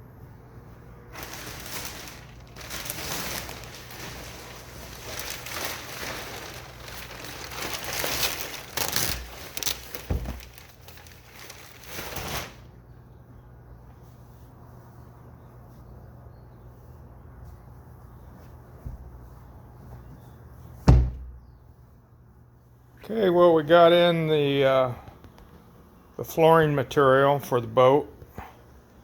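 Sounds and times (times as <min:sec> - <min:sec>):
upholstery fabric rustling: 0:01.1 - 0:12.6
dull thump: 0:10.1 - 0:10.4, 0:20.8 - 0:21.4.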